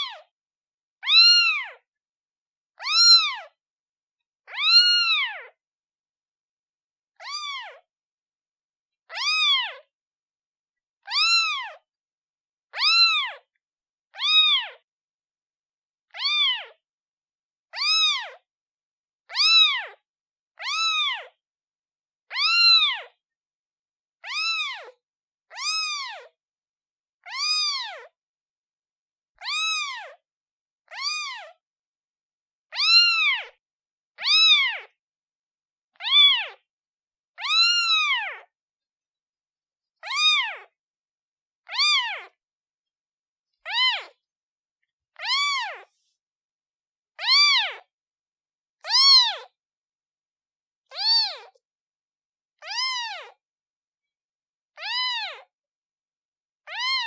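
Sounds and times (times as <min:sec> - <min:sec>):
kitten meowing: 0:01.0 - 0:01.8, 0:02.8 - 0:03.6, 0:04.5 - 0:05.5, 0:07.2 - 0:07.8, 0:09.1 - 0:09.9, 0:11.0 - 0:11.8, 0:12.7 - 0:13.5, 0:14.2 - 0:14.8, 0:16.1 - 0:16.8, 0:17.8 - 0:18.4, 0:19.3 - 0:20.0, 0:20.6 - 0:21.4, 0:22.3 - 0:23.2, 0:24.2 - 0:26.3, 0:27.2 - 0:28.1, 0:29.4 - 0:30.2, 0:30.9 - 0:31.6, 0:32.7 - 0:33.6, 0:34.2 - 0:35.0, 0:36.0 - 0:36.6, 0:37.4 - 0:38.5, 0:40.0 - 0:40.8, 0:41.6 - 0:42.4, 0:43.6 - 0:44.2, 0:45.1 - 0:46.2, 0:47.2 - 0:47.9, 0:48.8 - 0:49.6, 0:50.9 - 0:51.6, 0:52.6 - 0:53.4, 0:54.8 - 0:55.5, 0:56.7 - 0:57.0.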